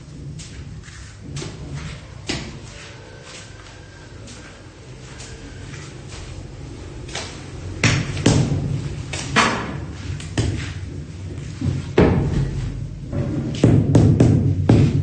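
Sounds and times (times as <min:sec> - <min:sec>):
steady low hum: 0:00.0 - 0:15.0
heavy thumps and knocks: 0:07.8 - 0:15.0.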